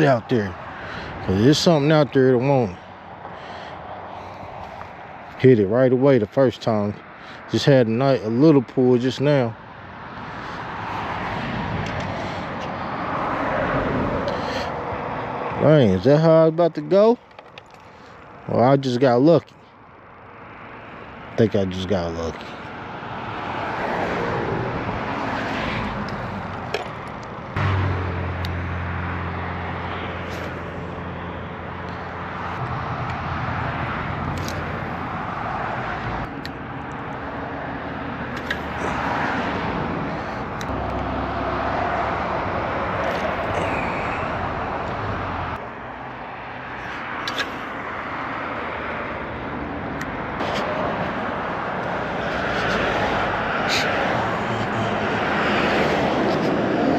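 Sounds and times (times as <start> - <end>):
outdoor noise: 0.0 - 56.9
low engine drone: 27.5 - 46.0.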